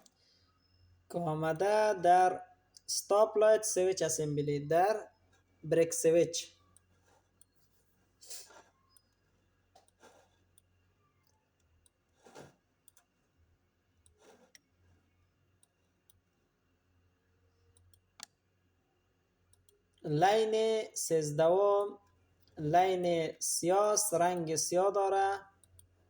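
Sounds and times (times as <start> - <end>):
faint clicks: 6.6 - 13.2.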